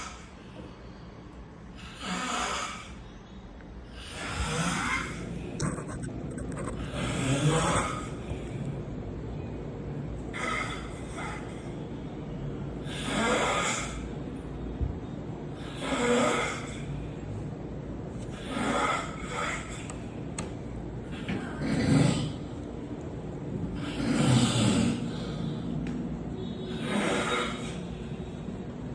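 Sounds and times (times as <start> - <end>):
quiet breathing: 0.0 - 28.9
man snoring: 1.8 - 2.9, 12.8 - 14.1, 15.6 - 16.9, 18.3 - 19.8, 23.8 - 25.4, 26.7 - 27.8.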